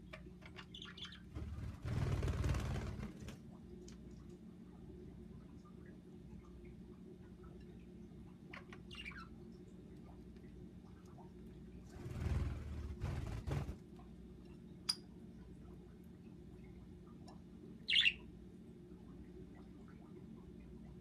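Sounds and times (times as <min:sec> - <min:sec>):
budgerigars chirping: 0:00.7 - 0:01.2, 0:17.9 - 0:18.2.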